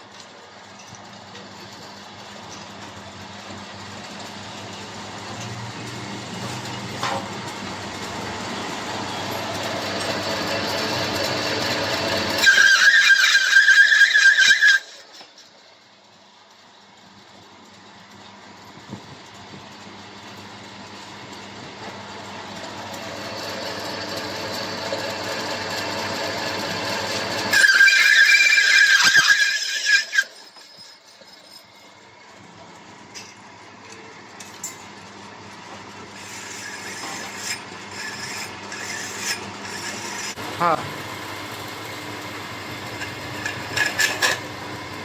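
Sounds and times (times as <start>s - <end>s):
metal lathe humming: 4.0s - 15.6s, 21.3s - 32.4s, 35.8s - 45.0s
high-pitched squeal: 8.5s - 15.6s, 23.1s - 32.1s.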